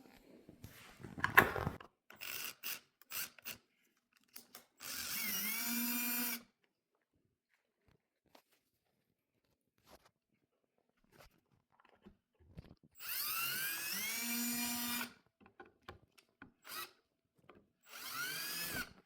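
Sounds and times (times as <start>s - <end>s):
power drill drilling wood: 4.8s - 6.4s, 13.0s - 15.1s, 16.6s - 16.9s, 17.8s - 19.0s.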